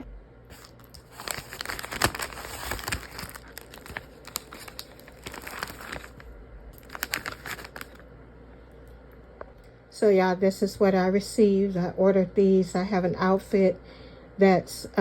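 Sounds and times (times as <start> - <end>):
package wrapping tearing and crinkling: 0.5 - 8.0.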